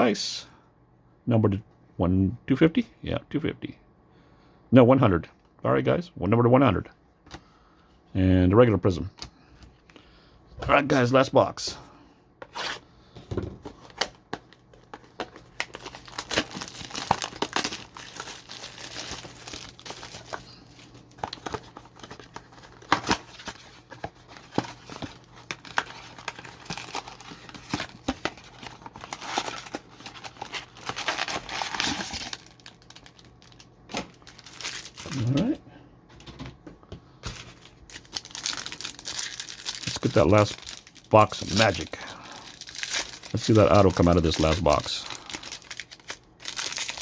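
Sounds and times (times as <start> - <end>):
plastic shrink wrap tearing: 15.3 - 23.8, 24.5 - 35.5, 37.4 - 47.0.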